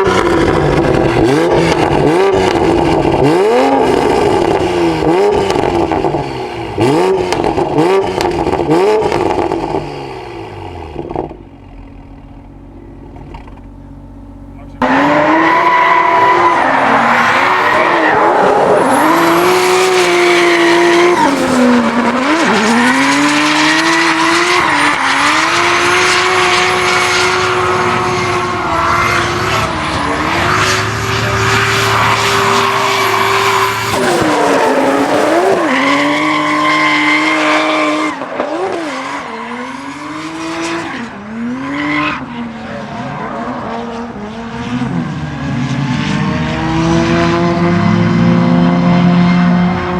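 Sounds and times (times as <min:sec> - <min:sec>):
car engine at high revs: 0:00.0 - 0:49.9.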